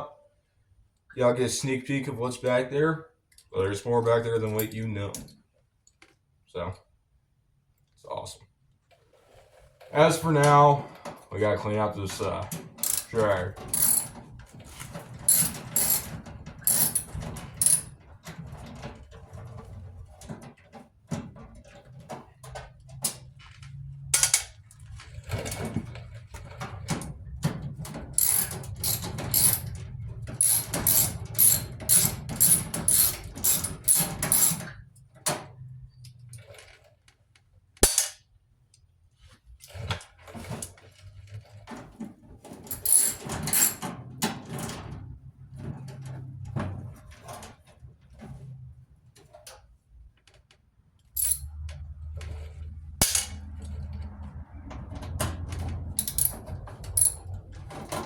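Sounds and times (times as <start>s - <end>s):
socket ratchet clicking: 12.8s - 13.1s, 13.7s - 14.1s, 15.3s - 17.9s, 28.2s - 29.7s, 30.4s - 34.6s, 56.0s - 56.3s, 57.0s - 57.2s
metal clanks: 12.8s - 18.3s, 28.0s - 34.8s, 42.6s - 43.9s, 51.2s - 51.5s, 53.0s - 53.7s, 55.3s - 58.0s.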